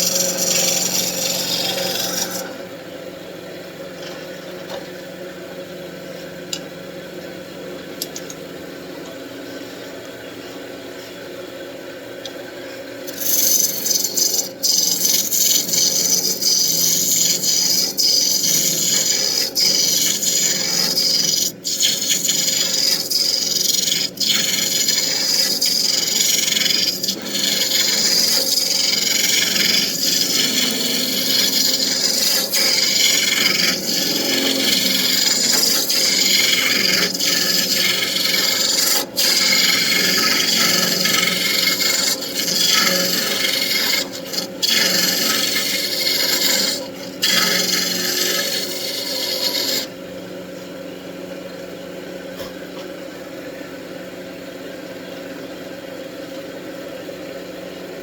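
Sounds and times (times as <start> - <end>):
tool cutting spinning wood: 0.0 - 2.7, 13.0 - 50.0
lathe motor hum: 0.0 - 8.3, 13.1 - 50.2.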